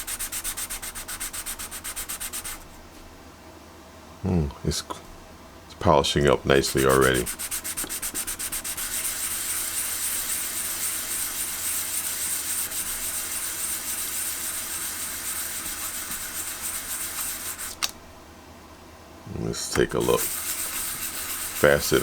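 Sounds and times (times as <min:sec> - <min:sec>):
wet hand-sanding scratchy hiss: 0:00.0 - 0:02.7, 0:06.5 - 0:17.8, 0:19.9 - 0:22.0.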